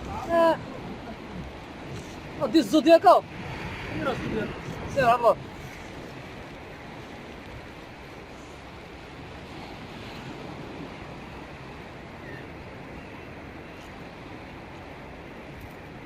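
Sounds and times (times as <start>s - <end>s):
sea surf washing in: 0.0s - 16.0s
wind noise on microphone: 0.0s - 16.0s.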